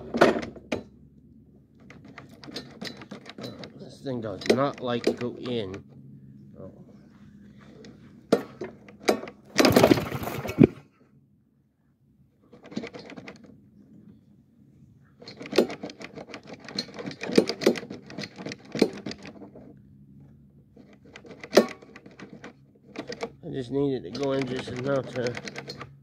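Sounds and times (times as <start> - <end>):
metal parts clicking and scraping: 12.5 - 13.5, 15.2 - 19.6
metal parts rapid clattering: 24.1 - 25.8.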